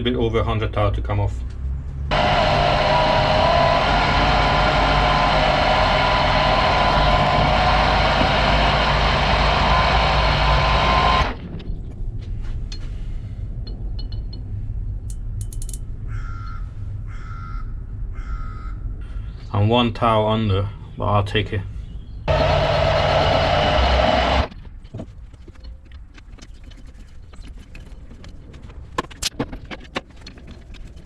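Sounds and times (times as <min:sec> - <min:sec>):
lathe humming: 0:02.1 - 0:11.4, 0:22.3 - 0:24.5
metal lathe cutting with ringing tone: 0:22.3 - 0:24.5.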